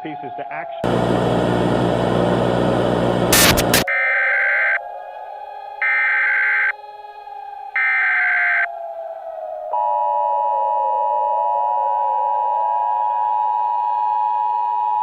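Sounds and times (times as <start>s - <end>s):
alert data bursts: 3.3s - 3.9s.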